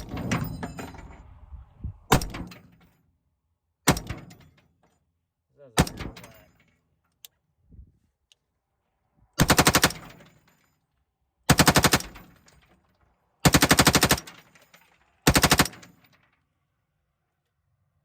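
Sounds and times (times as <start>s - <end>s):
rifle firing rapid bursts: 9.4s - 10.1s, 11.5s - 12.2s, 13.4s - 14.3s, 15.3s - 15.8s.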